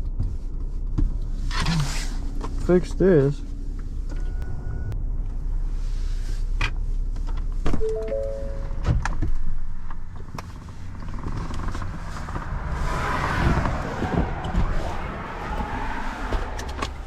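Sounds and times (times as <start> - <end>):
low engine rumble: 0.0 - 17.0
descending short tones: 7.8 - 9.2.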